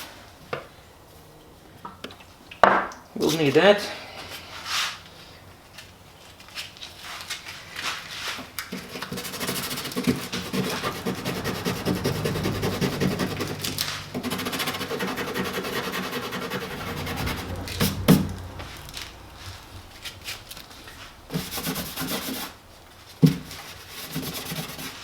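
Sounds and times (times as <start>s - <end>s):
scratchy sanding on plastic: 7.1s - 18.2s, 21.3s - 25.0s
light rubbing: 8.8s - 22.8s
low hum: 10.3s - 22.9s.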